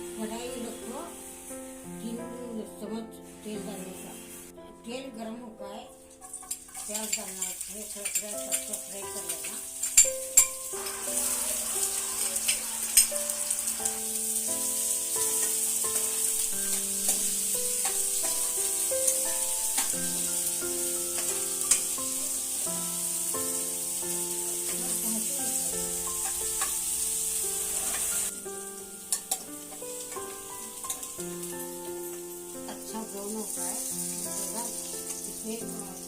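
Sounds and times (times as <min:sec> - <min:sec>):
onions sizzling in hot oil: 0:00.0 - 0:04.6, 0:05.7 - 0:36.0
soft background melody: 0:00.0 - 0:36.0
spoon clicking and scraping: 0:06.2 - 0:10.6.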